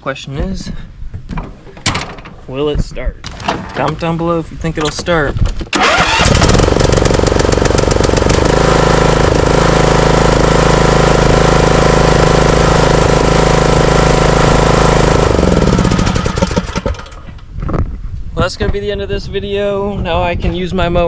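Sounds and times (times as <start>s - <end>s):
riding mower engine running: 5.7s - 17.5s.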